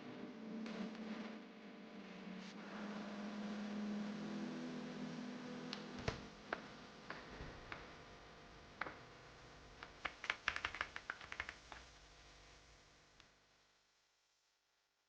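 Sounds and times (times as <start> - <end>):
mechanical keyboard keystrokes: 10.0 - 11.8.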